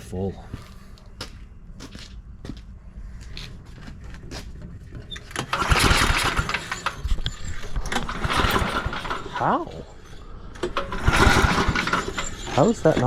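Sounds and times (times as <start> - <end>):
small engine chugging: 5.3 - 13.0.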